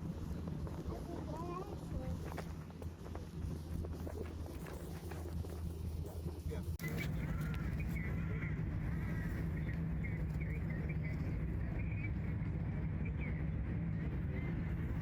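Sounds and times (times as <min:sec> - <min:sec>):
low outdoor rumble: 0:00.0 - 0:15.0
birds chirping: 0:06.4 - 0:15.0.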